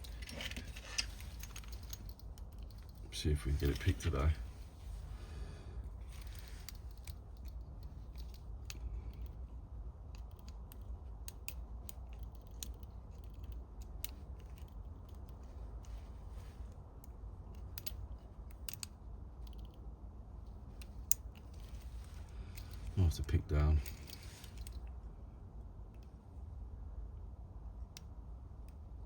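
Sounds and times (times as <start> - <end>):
lock pick clicking in padlock: 17.6 - 19.8.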